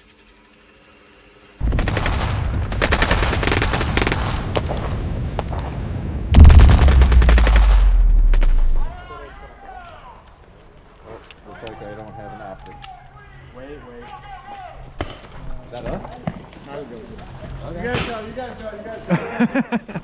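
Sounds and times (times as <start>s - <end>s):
rapid automatic gunfire: 1.6s - 4.6s, 6.4s - 9.2s
deep rumble: 6.3s - 9.3s.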